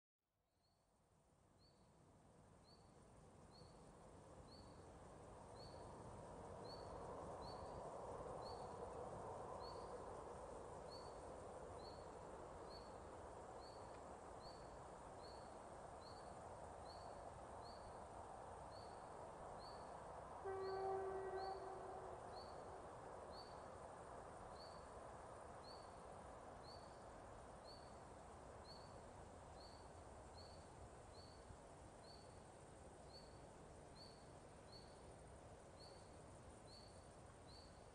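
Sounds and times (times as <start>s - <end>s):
distant train rumble: 18.5s - 26.7s.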